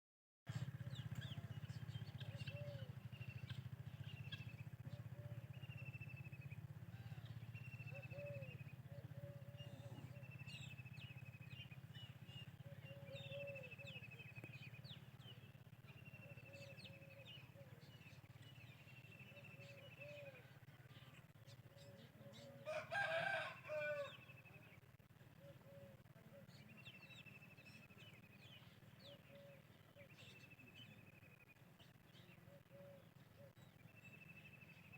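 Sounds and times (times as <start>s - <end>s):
birds chirping: 0.5s - 34.9s
low bird calls: 0.5s - 34.9s
steady low hum: 0.5s - 34.9s
rooster crowing: 22.6s - 24.3s.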